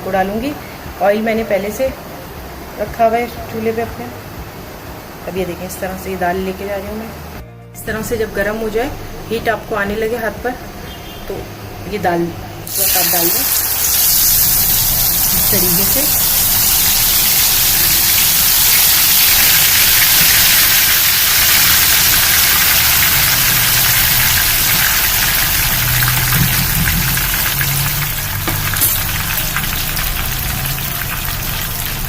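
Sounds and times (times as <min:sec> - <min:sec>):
lentils sizzling in hot oil: 0:12.7 - 0:32.0.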